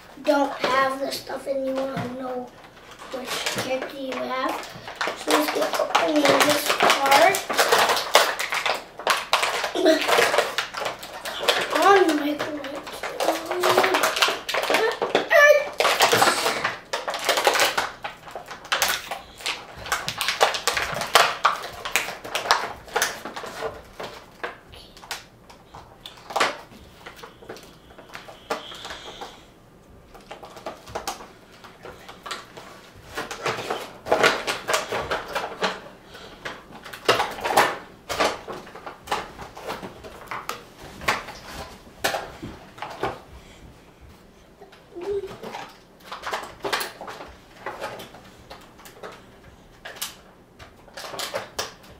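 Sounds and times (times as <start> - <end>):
plastic packaging crinkling and tearing: 0.0 - 29.5, 30.1 - 43.2, 44.9 - 51.9.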